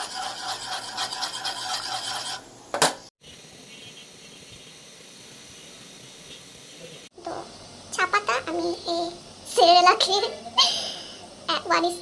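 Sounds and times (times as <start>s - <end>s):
metal spoon scraping in pot: 0.0s - 2.4s
faint steady hiss: 2.6s - 12.0s.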